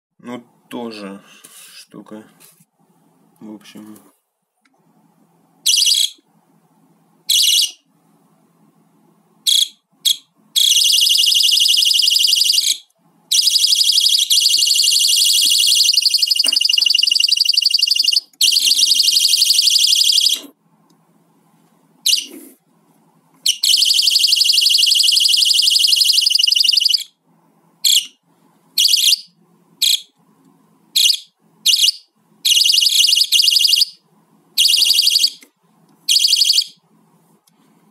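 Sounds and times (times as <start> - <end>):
shrill piezo alarm siren: 5.7 - 6.2, 7.3 - 7.8, 10.6 - 20.6, 23.5 - 27.1, 28.8 - 30.0, 31.0 - 34.0, 34.6 - 35.4, 36.1 - 36.8.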